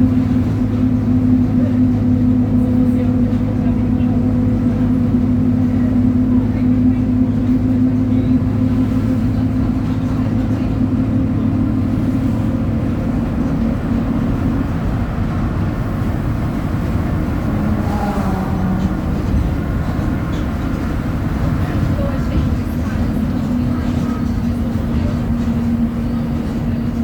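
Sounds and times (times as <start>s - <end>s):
bus engine high revs: 0.0s - 27.0s
differential growling: 16.9s - 21.1s.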